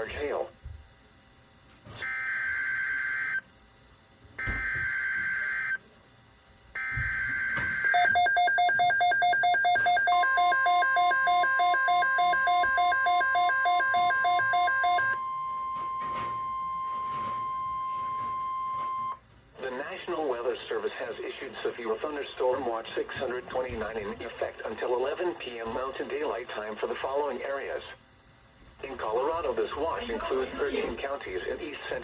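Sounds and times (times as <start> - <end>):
steady warning alarm tone: 1.9 - 3.5, 4.2 - 5.9, 6.7 - 19.3
rapid electronic beeping: 7.8 - 19.2.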